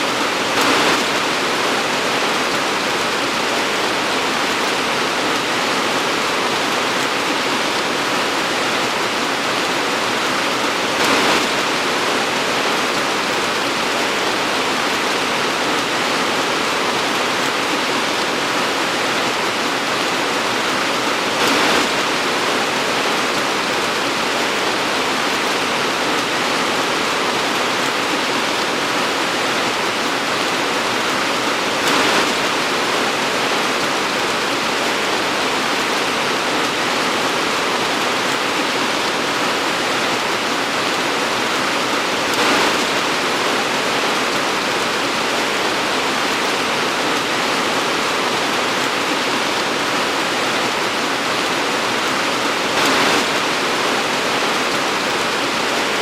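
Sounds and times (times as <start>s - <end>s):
torrential rain hiss: 0.0s - 56.0s.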